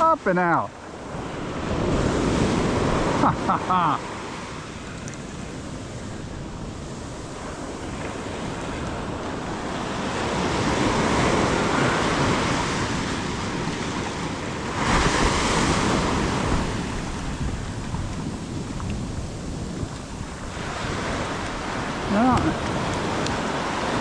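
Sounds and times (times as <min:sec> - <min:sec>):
ocean surf washing: 0:00.0 - 0:24.0
wind buffeting microphone: 0:04.6 - 0:24.0.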